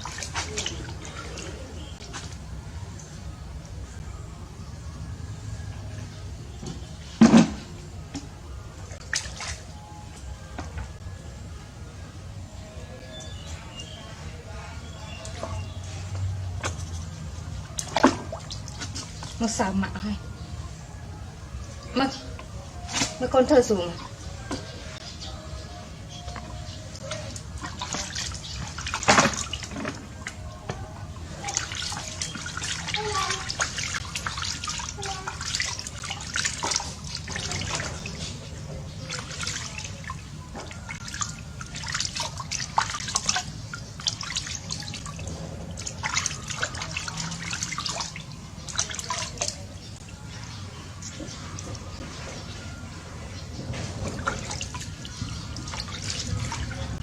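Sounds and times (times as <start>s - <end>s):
water splashing in bathtub: 0.0s - 2.4s, 9.0s - 9.7s, 15.2s - 20.0s, 26.3s - 52.5s, 53.7s - 57.0s.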